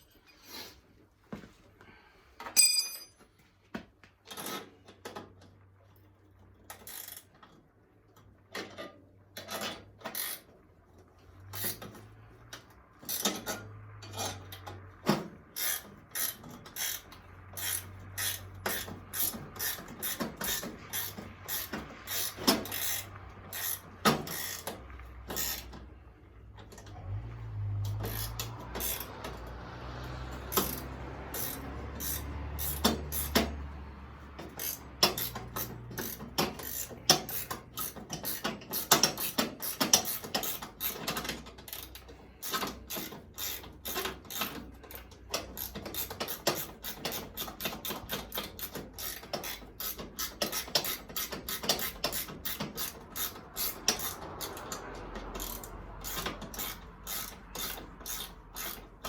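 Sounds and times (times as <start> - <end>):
ratchet wrench clicking: 6.7 - 7.3, 9.4 - 10.5, 11.4 - 12.0, 12.6 - 25.8, 27.8 - 29.5, 30.3 - 33.7, 34.3 - 59.0.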